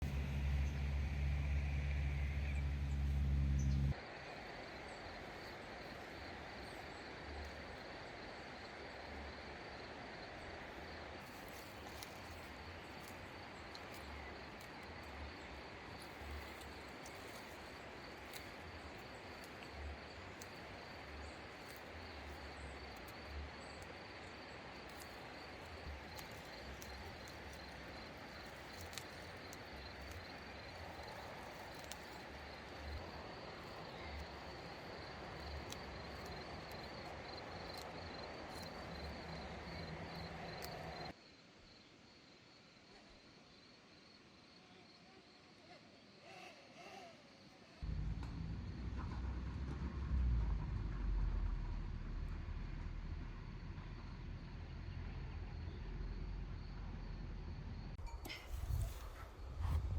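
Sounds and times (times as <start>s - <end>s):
loud low rumble: 0.0s - 4.0s, 47.8s - 57.9s
insects chirping: 0.1s - 47.9s, 51.7s - 59.9s
faint clicks: 24.9s - 33.0s.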